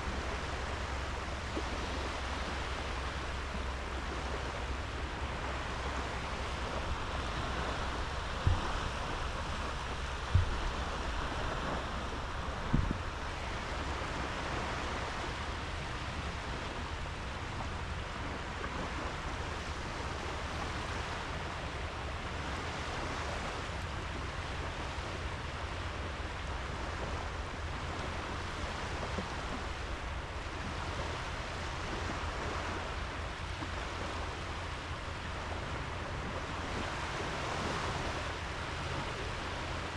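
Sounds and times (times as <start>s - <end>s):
sea surf on sandy beach: 0.0s - 39.9s
short low thumps: 8.3s - 9.5s, 10.2s - 11.2s.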